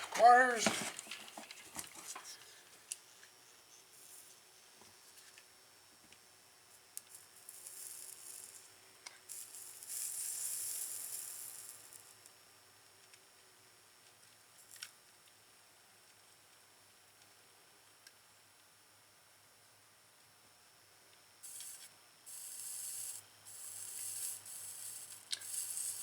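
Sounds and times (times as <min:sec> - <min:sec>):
flux sizzling under soldering iron: 0:06.1 - 0:13.2, 0:21.3 - 0:26.0.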